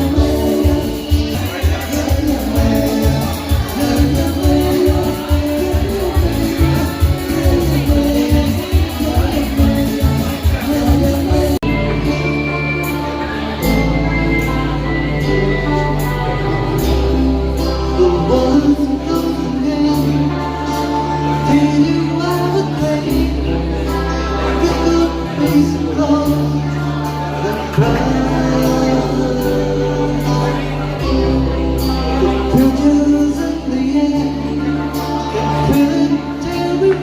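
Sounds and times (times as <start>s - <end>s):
long held bass notes: 0.0s - 37.0s
person singing: 0.0s - 37.0s.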